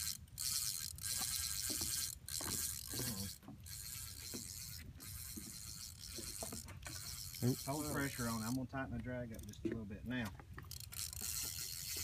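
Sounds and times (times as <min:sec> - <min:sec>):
fishing reel drag clicking: 0:00.0 - 0:09.6, 0:10.6 - 0:12.0.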